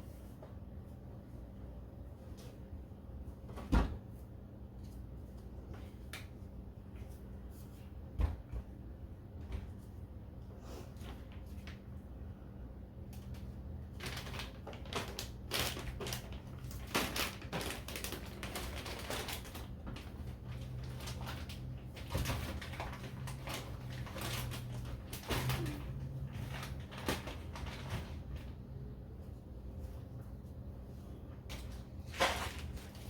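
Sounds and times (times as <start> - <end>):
steady low hum: 18.0 - 33.0.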